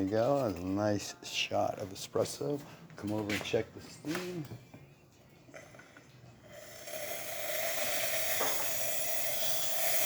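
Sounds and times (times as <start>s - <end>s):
steam wand hissing: 6.5s - 10.0s.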